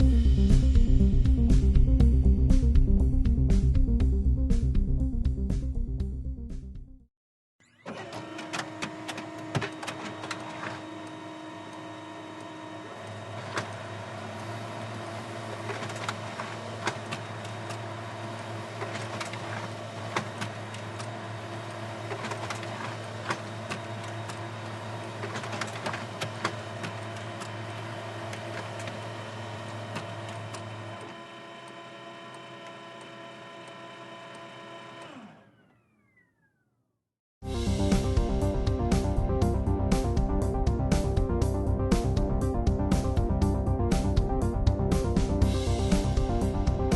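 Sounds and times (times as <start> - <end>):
printer motor whine: 7.6 - 36.6
paper feed clicking and clatter: 8.0 - 33.4.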